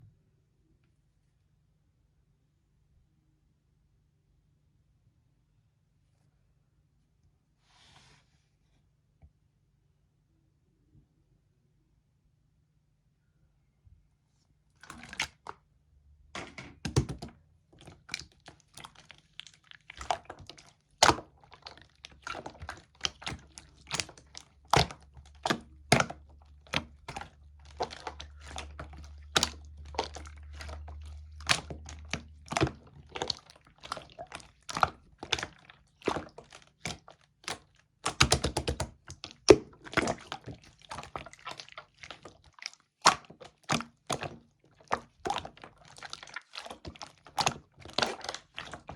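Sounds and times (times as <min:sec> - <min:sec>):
slime clicking and popping: 0:17.9 - 0:44.4.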